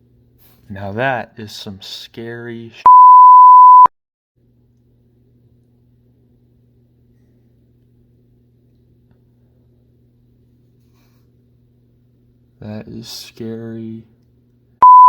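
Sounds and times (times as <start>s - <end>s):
faint low hum: 0.0s - 15.0s
censor bleep: 2.9s - 3.9s.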